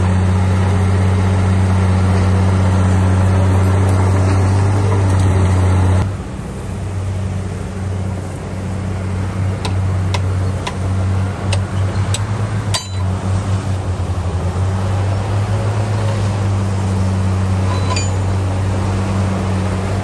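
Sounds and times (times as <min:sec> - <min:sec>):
heavy diesel engine running: 0:00.0 - 0:20.0
sharp metallic clinks: 0:11.7 - 0:13.1, 0:17.6 - 0:18.4.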